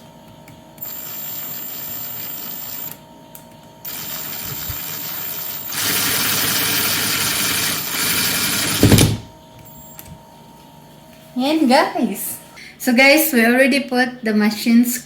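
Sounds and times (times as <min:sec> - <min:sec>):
power drill whirring: 0:00.8 - 0:03.0, 0:03.9 - 0:09.1.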